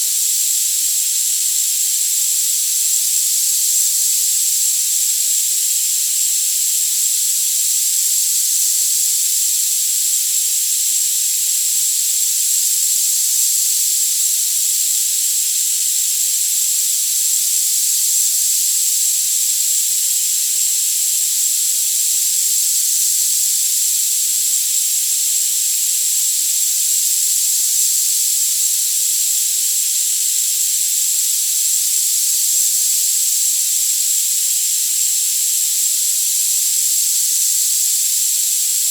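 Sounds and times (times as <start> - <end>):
high-pitched hiss: 0.0 - 38.9.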